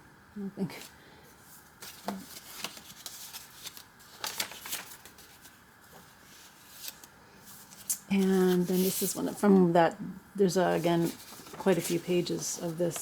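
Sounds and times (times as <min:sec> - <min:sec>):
paper pages rustling: 0:01.5 - 0:09.4, 0:10.7 - 0:13.0.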